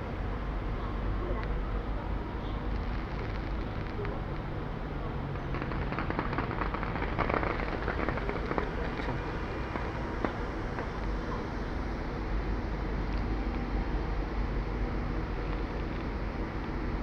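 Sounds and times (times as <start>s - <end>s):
fireworks crackling and popping: 2.2s - 13.4s.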